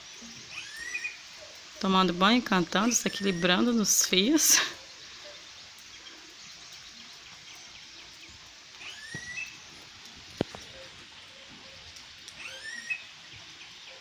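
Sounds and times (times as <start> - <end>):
light rain: 0.0 - 14.0
bird whistled call: 0.6 - 1.2, 12.4 - 13.1.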